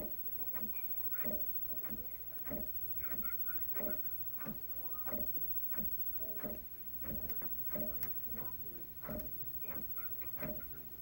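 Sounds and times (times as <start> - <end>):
printer mechanism ticking: 0.0 - 11.0.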